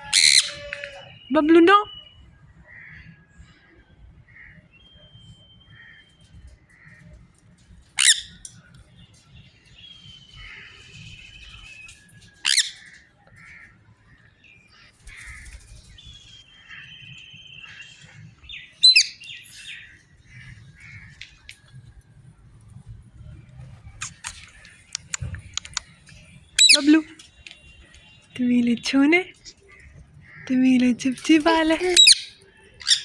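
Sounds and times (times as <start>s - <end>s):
bird squawks: 0.0s - 1.3s, 8.0s - 8.5s, 12.4s - 13.7s, 15.0s - 17.8s, 24.0s - 26.0s, 26.6s - 27.1s, 31.2s - 33.0s
bird chirps: 0.0s - 2.4s, 4.4s - 6.5s, 8.0s - 13.1s, 24.0s - 30.6s, 31.2s - 33.0s.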